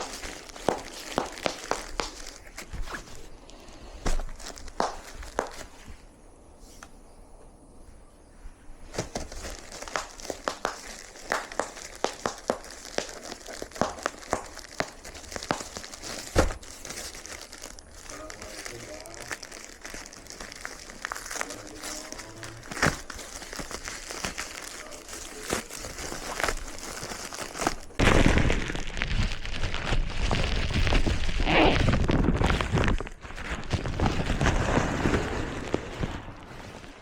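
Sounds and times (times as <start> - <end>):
packaging crinkling and rustling: 0.0 - 5.9, 8.9 - 37.0.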